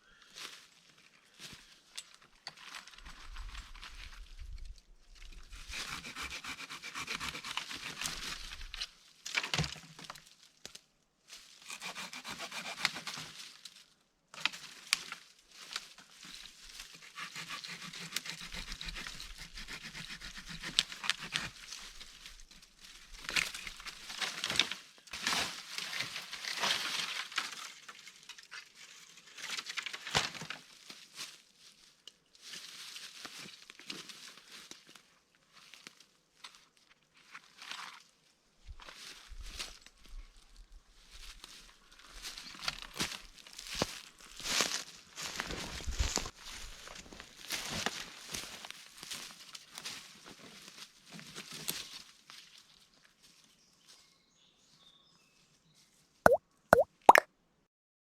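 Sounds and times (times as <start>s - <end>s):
footsteps crunching through dry ground cover: 41.0s - 50.2s.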